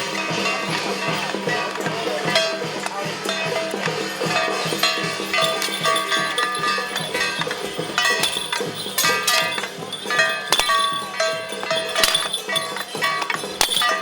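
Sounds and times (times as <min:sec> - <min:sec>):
fast drumbeat: 0:00.0 - 0:14.0
held melody: 0:00.0 - 0:14.0
sharp percussive clicks: 0:00.0 - 0:14.0.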